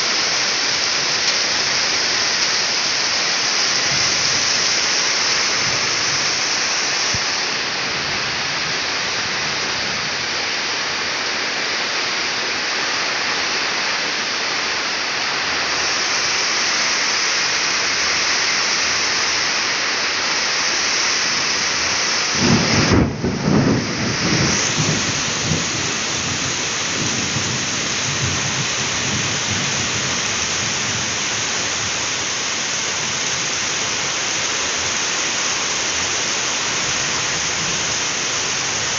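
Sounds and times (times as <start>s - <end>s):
heavy rain falling: 0.0s - 38.9s
thunder rumbling: 22.3s - 31.1s.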